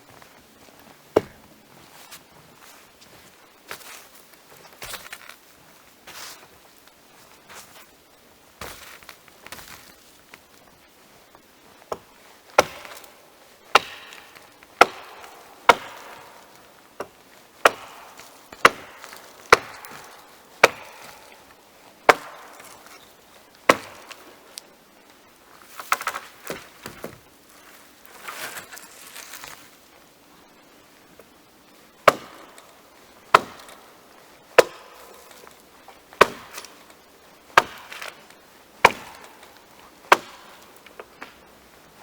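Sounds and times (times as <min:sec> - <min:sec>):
axe chopping wood: 0:01.1 - 0:01.5, 0:11.9 - 0:21.4, 0:22.1 - 0:22.9, 0:23.6 - 0:24.2, 0:32.0 - 0:32.7, 0:33.3 - 0:33.8, 0:34.6 - 0:35.1, 0:36.2 - 0:36.8, 0:37.5 - 0:38.2, 0:38.8 - 0:39.5, 0:40.1 - 0:41.4.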